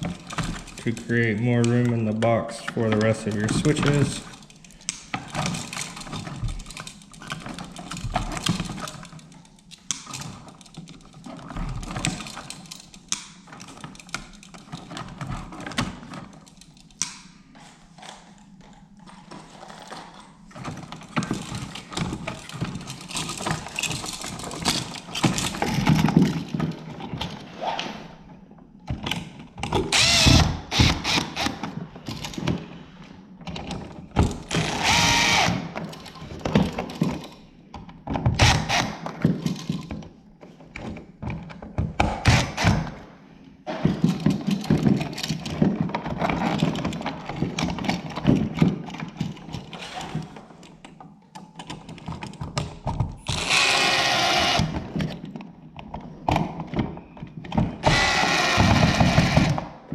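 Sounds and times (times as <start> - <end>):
switch and tools clicking and rattling: 0.0 - 27.4.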